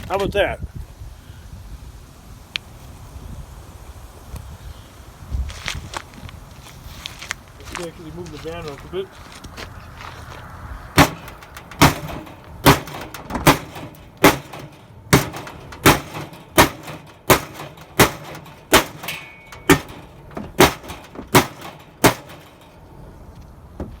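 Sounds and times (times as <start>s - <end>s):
hammer striking metal: 11.0s - 22.8s.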